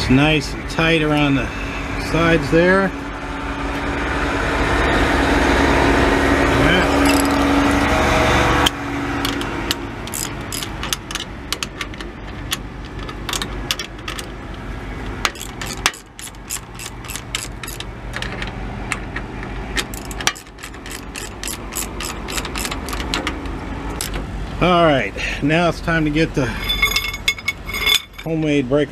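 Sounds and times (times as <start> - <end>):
ratchet wrench clicking: 6.9 - 7.4, 10.0 - 11.3, 15.2 - 17.9, 19.8 - 23.3
low steady hum: 19.8 - 28.8.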